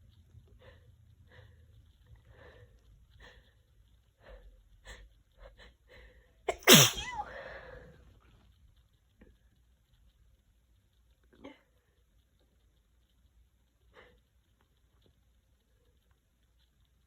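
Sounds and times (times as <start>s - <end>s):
woman breathing faintly: 0.4s - 6.4s, 7.2s - 8.1s
woman sneezing: 6.5s - 7.5s.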